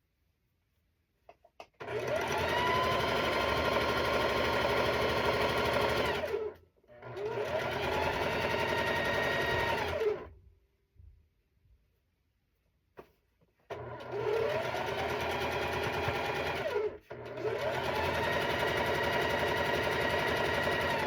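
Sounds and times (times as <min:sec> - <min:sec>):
sewing machine stitching: 0:01.8 - 0:10.3, 0:13.7 - 0:21.0
sewing machine clicks: 0:13.7 - 0:21.0.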